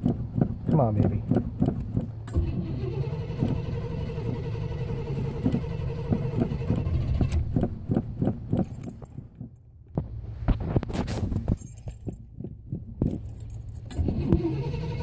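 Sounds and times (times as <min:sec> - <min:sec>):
irregular knocks and clicks: 0:00.0 - 0:02.5, 0:05.3 - 0:10.9, 0:11.5 - 0:14.4
engine cranking on starter: 0:00.0 - 0:08.9, 0:13.1 - 0:15.0.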